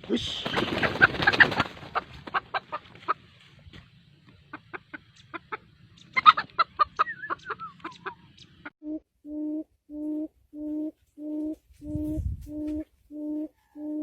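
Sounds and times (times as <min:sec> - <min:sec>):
bird calling in rapid notes: 0:06.0 - 0:08.7.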